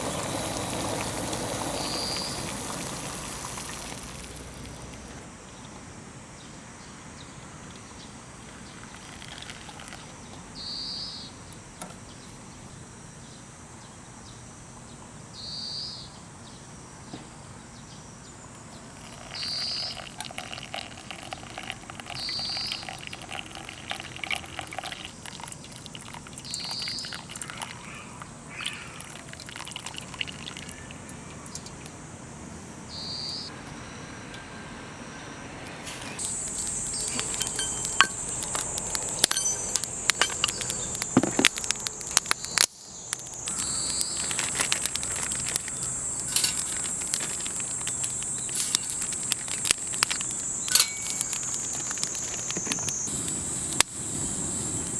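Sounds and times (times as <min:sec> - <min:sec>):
campfire crackling: 0:00.0 - 0:05.3, 0:08.4 - 0:10.1, 0:18.7 - 0:32.1, 0:35.8 - 0:54.9
bird short high call: 0:43.5 - 0:44.3.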